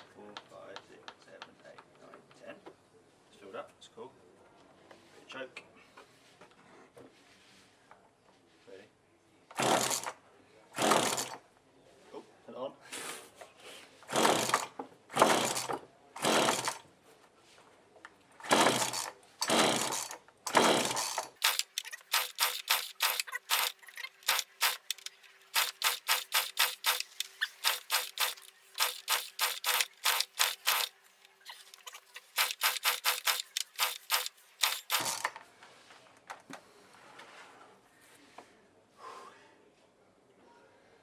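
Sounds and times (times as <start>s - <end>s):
chainsaw engine chuffing: 9.6s - 10.1s, 10.8s - 11.3s, 14.1s - 16.8s, 18.4s - 35.3s
chainsaw recoil starter pulls: 9.6s - 10.1s, 10.8s - 11.4s, 14.1s - 16.8s, 18.4s - 35.4s.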